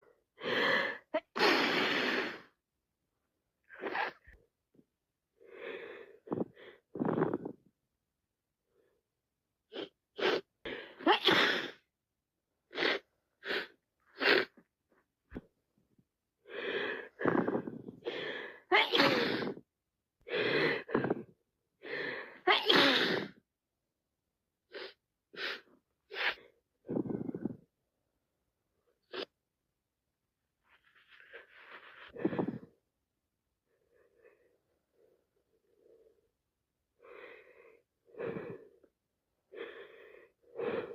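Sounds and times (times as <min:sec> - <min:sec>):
person sneezing: 0:11.0 - 0:11.8, 0:18.8 - 0:19.6, 0:22.5 - 0:23.4.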